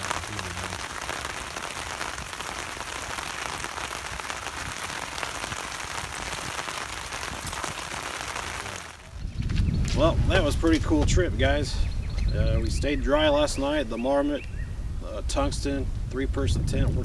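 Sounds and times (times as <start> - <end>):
steady rain falling: 0.0 - 11.1.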